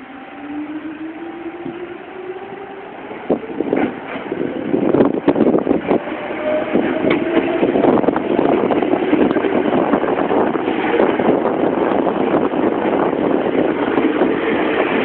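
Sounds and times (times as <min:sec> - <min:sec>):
train wheels rumbling on rail: 0:00.0 - 0:15.0
sharp rail clacks: 0:03.1 - 0:11.5.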